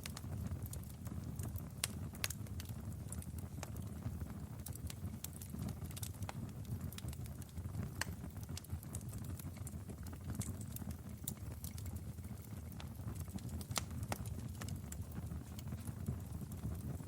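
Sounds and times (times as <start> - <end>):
fire crackling and popping: 0.0 - 17.0
fire rumbling: 0.0 - 17.0.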